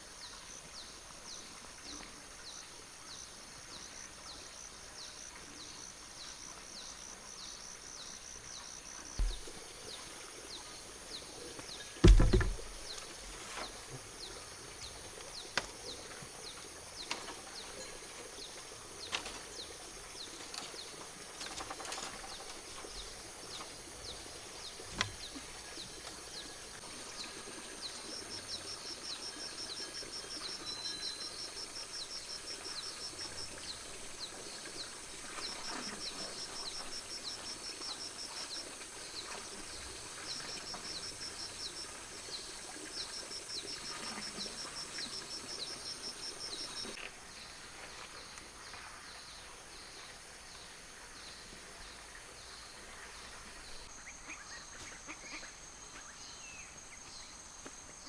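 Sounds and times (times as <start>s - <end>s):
small birds chirping: 8.0s - 47.0s
sharp knocks: 9.2s - 9.6s, 12.0s - 13.0s.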